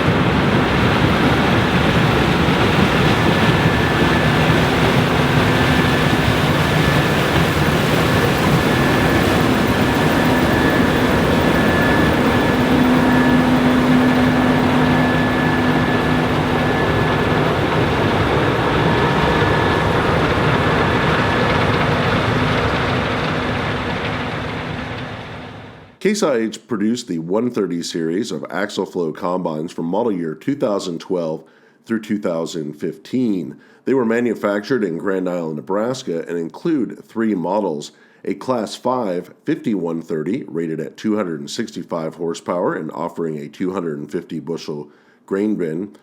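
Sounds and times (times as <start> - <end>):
combine harvester running: 0.0 - 26.0
faint high whine: 0.0 - 26.0.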